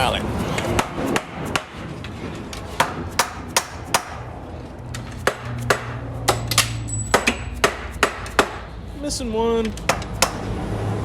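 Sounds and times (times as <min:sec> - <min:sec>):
mallet knocking on metal cover: 0:05.2 - 0:08.7, 0:09.9 - 0:10.4.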